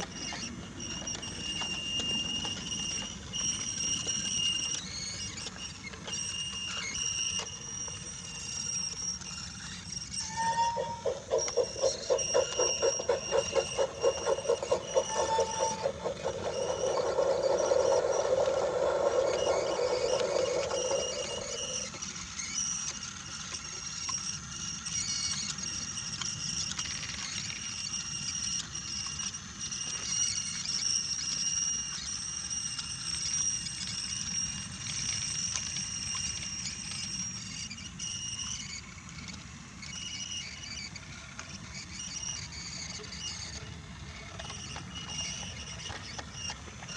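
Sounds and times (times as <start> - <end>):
toy train chugging: 0.0 - 25.6, 41.0 - 46.9
toy train rushing: 0.0 - 26.1, 41.0 - 46.9
toy train whine: 0.0 - 46.9.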